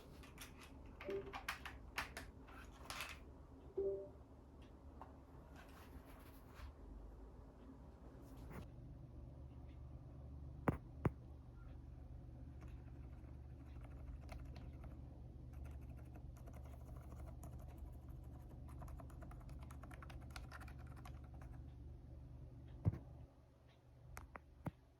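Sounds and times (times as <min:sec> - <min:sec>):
steady low hum: 0:00.0 - 0:24.9
soft keyboard typing: 0:00.2 - 0:02.3, 0:12.5 - 0:21.8.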